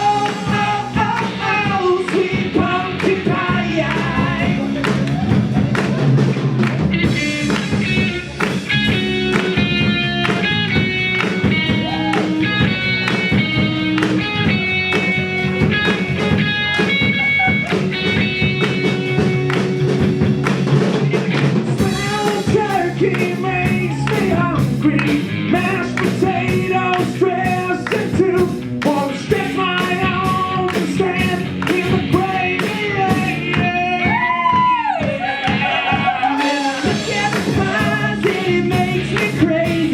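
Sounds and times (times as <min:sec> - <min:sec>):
person singing: 0:00.0 - 0:05.8, 0:21.0 - 0:39.9
blues-rock band playing: 0:00.0 - 0:39.9.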